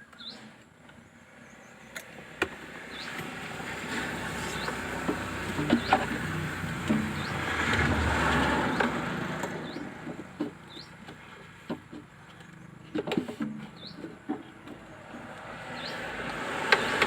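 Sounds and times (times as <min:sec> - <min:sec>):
bird chirping: 0:00.0 - 0:02.0, 0:02.9 - 0:03.2, 0:03.9 - 0:11.4, 0:13.6 - 0:14.4, 0:15.6 - 0:16.1.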